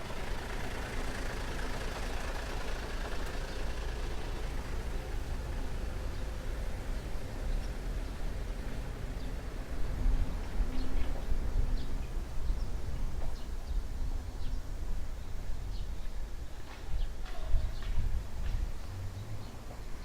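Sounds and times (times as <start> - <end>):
heavy vehicle engine: 0.0 - 15.6
road traffic rumble: 0.0 - 20.0.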